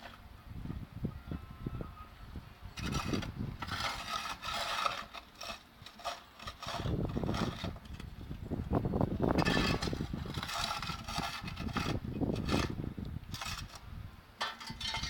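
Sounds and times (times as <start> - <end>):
scraping and rattling: 2.8 - 8.4, 9.2 - 13.8, 14.4 - 15.0.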